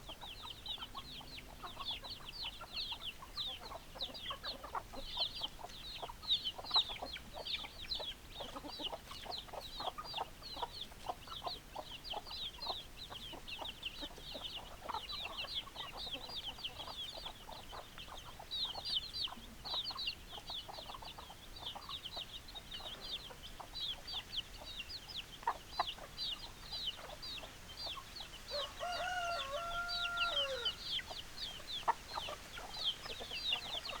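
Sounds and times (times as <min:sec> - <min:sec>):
chickens clucking: 0:00.0 - 0:34.0
rooster crowing: 0:28.5 - 0:31.0.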